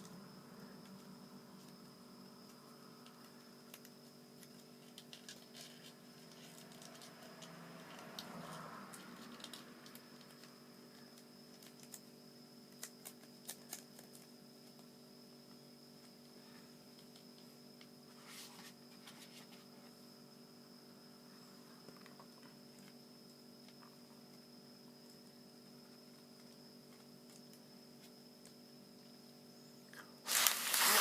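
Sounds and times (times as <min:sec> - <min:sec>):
faint steady hum: 0:00.0 - 0:31.0
paper rustling: 0:30.3 - 0:31.0.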